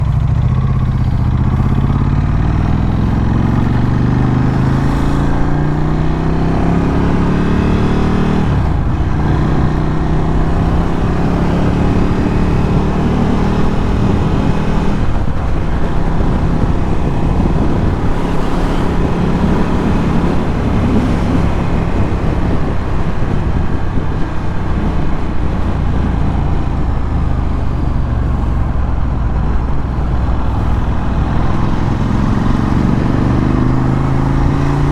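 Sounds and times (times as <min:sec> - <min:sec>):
motorcycle engine revving: 0:00.0 - 0:34.9.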